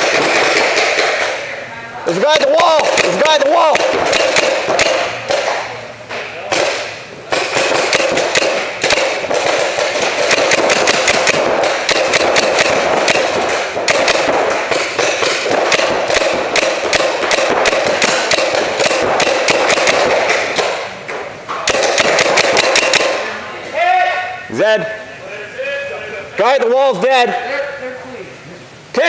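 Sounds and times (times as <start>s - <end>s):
paintball markers firing rapidly: 0.0s - 1.5s, 2.2s - 5.6s, 6.5s - 20.9s, 21.6s - 23.3s.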